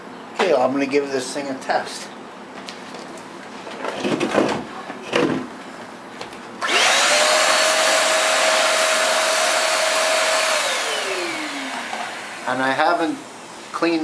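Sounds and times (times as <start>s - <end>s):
stick vacuum motor whine: 6.6s - 12.6s.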